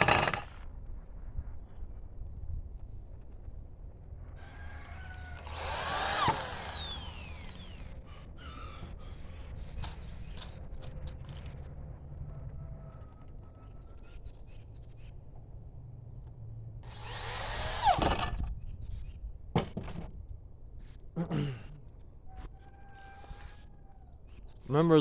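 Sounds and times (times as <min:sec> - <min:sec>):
power drill drilling into wood: 0:00.0 - 0:00.6, 0:04.9 - 0:09.2, 0:16.8 - 0:18.5.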